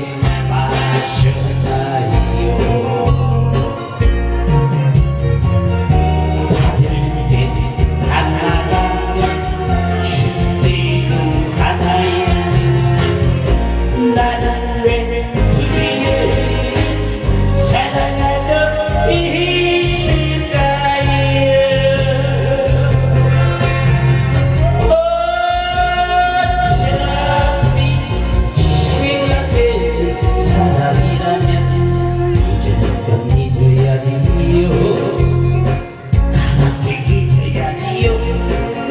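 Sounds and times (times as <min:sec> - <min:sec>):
backing track with bass beat: 0:00.0 - 0:38.9
person singing live: 0:00.0 - 0:38.9.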